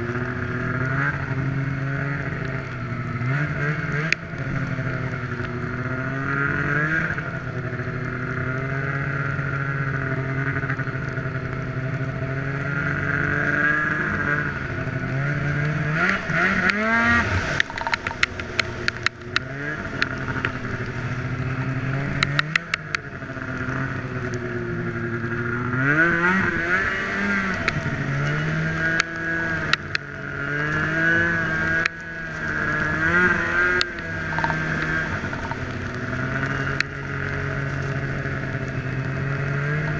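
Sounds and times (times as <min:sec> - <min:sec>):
snowmobile engine running: 0:00.0 - 0:39.9
sharp clicks and knocks: 0:17.4 - 0:21.0, 0:22.0 - 0:23.1, 0:31.7 - 0:37.0.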